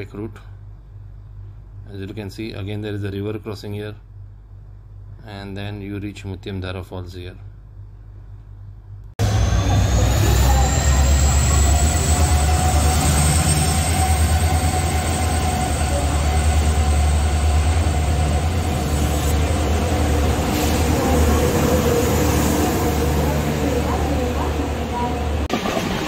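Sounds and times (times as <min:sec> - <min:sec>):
train rumbling on rails: 0:09.2 - 0:26.0.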